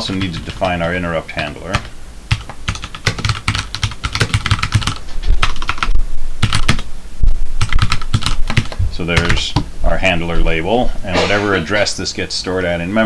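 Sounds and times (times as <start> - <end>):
typing on computer keyboard: 0.2 - 6.8, 7.6 - 9.4.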